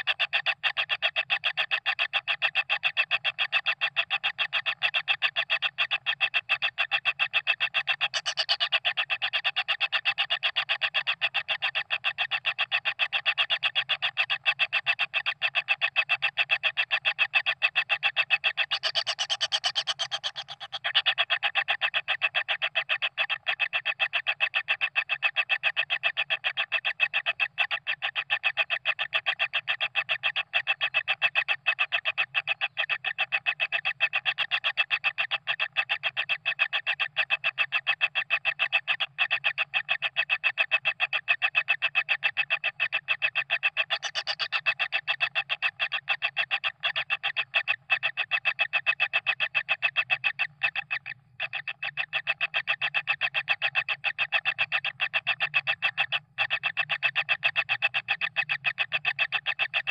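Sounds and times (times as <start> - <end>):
bird chick begging chirps: 7.8 - 8.8, 18.5 - 21.0, 43.8 - 44.7.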